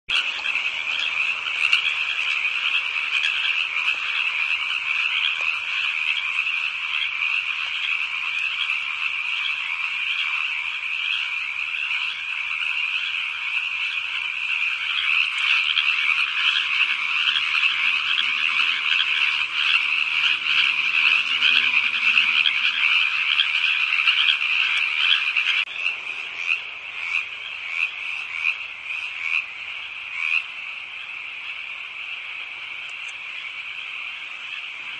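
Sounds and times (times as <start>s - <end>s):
chorus of frogs trilling: 0.1s - 34.9s.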